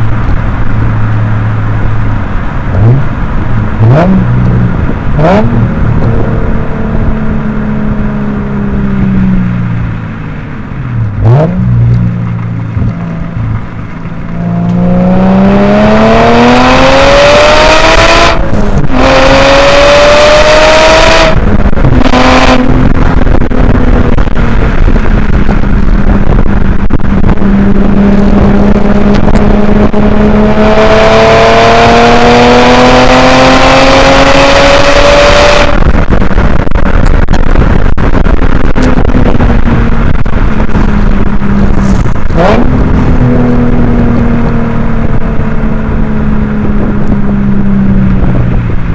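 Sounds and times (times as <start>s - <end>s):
car engine revving: 0.0s - 48.9s
wind rush over microphone: 0.0s - 48.9s.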